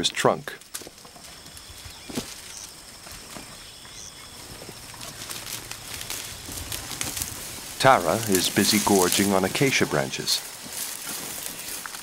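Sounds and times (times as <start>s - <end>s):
leaves rustling: 0.5s - 12.0s
twigs crackling and snapping: 0.6s - 12.0s
high insect-like tones: 1.1s - 12.0s.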